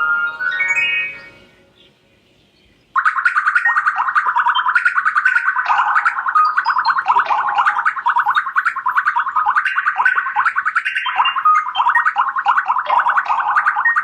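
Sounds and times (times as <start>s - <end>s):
chirpy ringtone notes: 0.0s - 2.0s, 3.0s - 14.0s.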